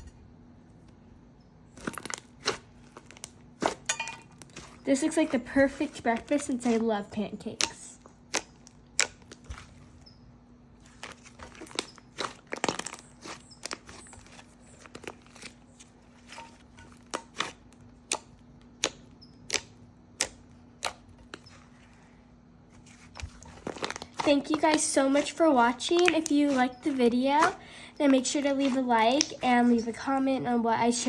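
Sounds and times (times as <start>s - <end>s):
faint steady hum: 0.0s - 31.0s
slime squishing with clicks and pops: 7.5s - 9.6s, 16.9s - 21.6s, 23.8s - 29.6s.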